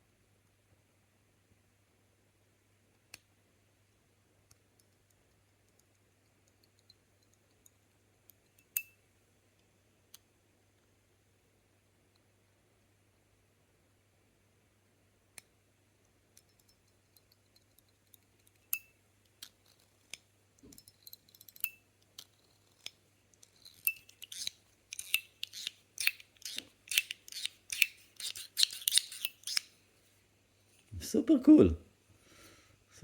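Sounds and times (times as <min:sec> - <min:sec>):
fidget toy clicking: 0:21.5 - 0:29.7.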